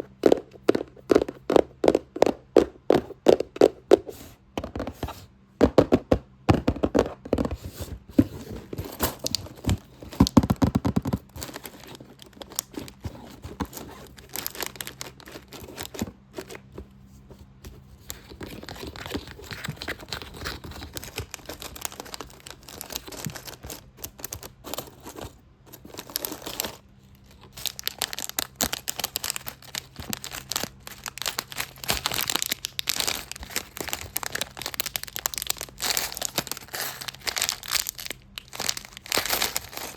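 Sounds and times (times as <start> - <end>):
scratching and crinkling on a box: 0.0 - 39.9
rapid tapping on a box: 0.1 - 5.0, 5.6 - 8.3, 9.6 - 11.6.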